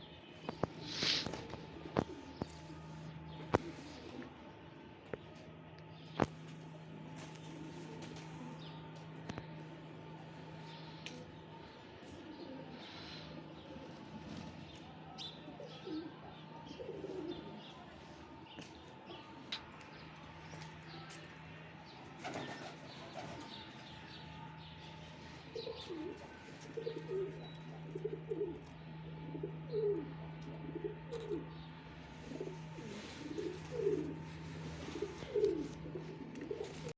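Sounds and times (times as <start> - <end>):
small birds chirping: 0.0 - 4.2
steady low hum: 0.0 - 36.9
pigeons cooing: 0.4 - 4.6, 10.0 - 19.2, 22.1 - 36.9.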